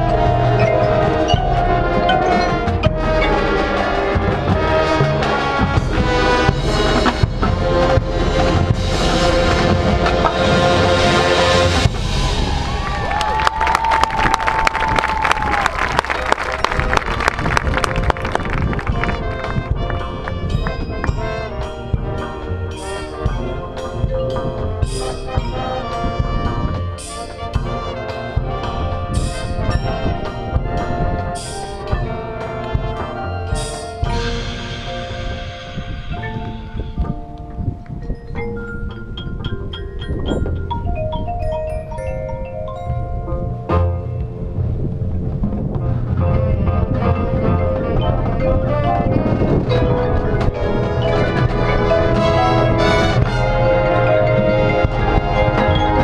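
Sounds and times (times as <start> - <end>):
sharp percussion strikes: 0.0 - 13.7, 15.5 - 44.3
marching band playing: 0.0 - 39.7, 40.4 - 56.0.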